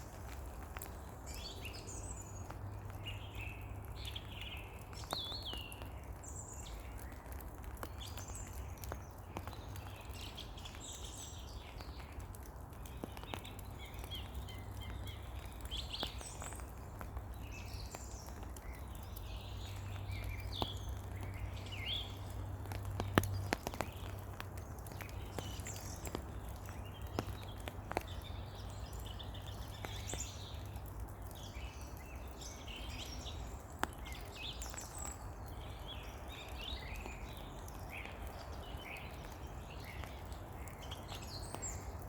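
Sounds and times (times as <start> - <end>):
light rain pattering: 0.0 - 42.0
songbirds chirping: 0.0 - 42.0
water drop ticks: 12.0 - 42.0.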